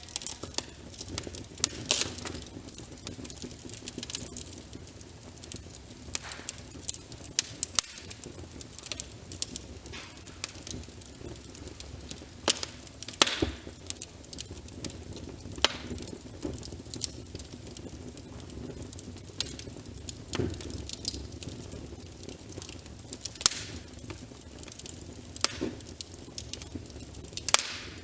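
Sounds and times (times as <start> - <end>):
rain on a window: 0.0 - 28.0
wood fire crackling and popping: 0.0 - 28.0.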